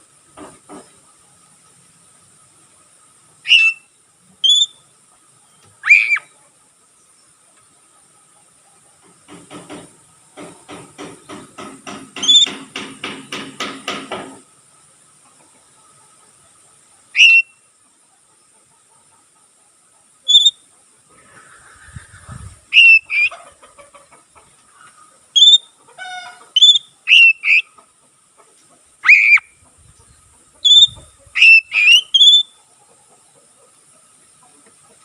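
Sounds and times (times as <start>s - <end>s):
songbird whistling and chirping: 3.4s - 4.8s, 5.6s - 6.3s, 12.2s - 12.6s, 17.1s - 17.6s, 20.3s - 20.6s, 22.7s - 23.3s, 25.4s - 25.7s, 26.6s - 27.7s, 29.0s - 29.5s, 30.6s - 32.6s.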